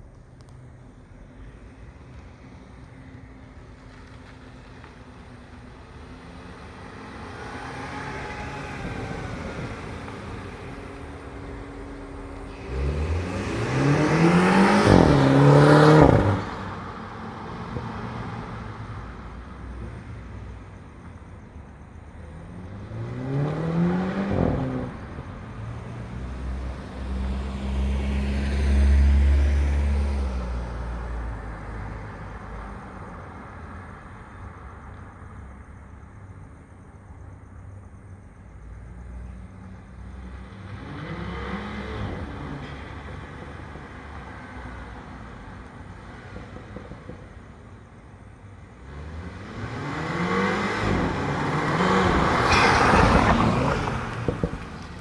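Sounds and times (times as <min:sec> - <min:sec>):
car engine revving: 0:06.5 - 0:18.5, 0:48.8 - 0:55.0.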